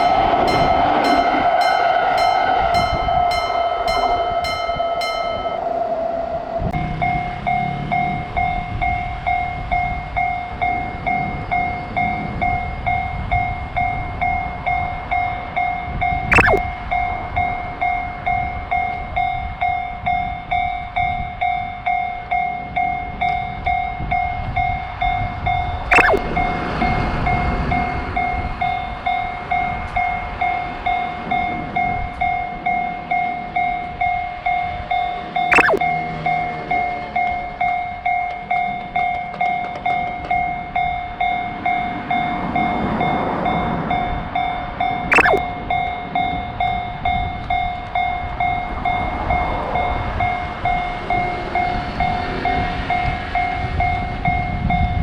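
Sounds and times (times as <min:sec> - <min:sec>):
sharp downward sweeping sound: 0:00.0 - 0:08.0, 0:16.3 - 0:16.6, 0:25.9 - 0:26.2, 0:35.5 - 0:36.3, 0:45.1 - 0:45.4
low rumble: 0:00.0 - 0:09.1
railroad crossing bell ringing: 0:00.0 - 0:55.0.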